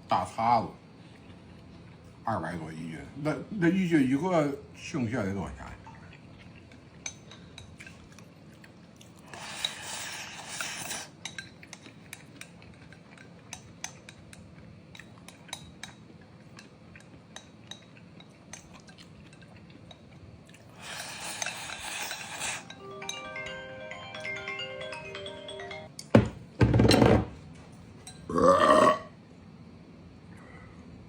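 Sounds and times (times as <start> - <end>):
utensils clinking against dishes: 20.8 - 24.4
utensil scraping dish: 20.9 - 22.8.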